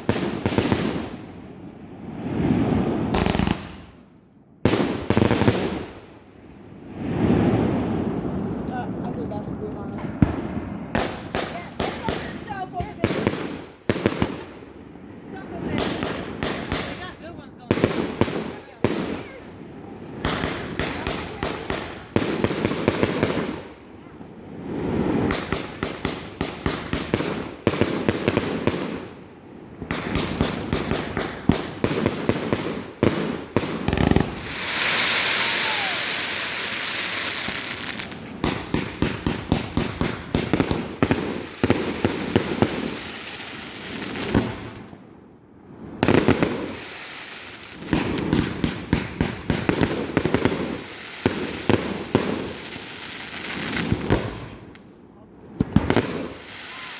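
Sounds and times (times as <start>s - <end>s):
fireworks popping and banging: 2.4s - 4.0s, 7.2s - 14.7s, 15.4s - 19.5s, 20.2s - 23.8s, 24.7s - 44.9s, 46.0s - 54.8s, 55.6s - 56.9s
fireworks hissing: 7.1s - 14.6s, 29.8s - 44.8s, 46.0s - 54.4s, 56.2s - 56.9s.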